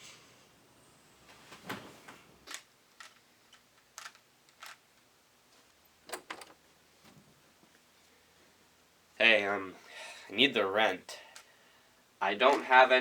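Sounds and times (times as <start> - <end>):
puzzle cube plastic clicks: 2.5 - 5.1.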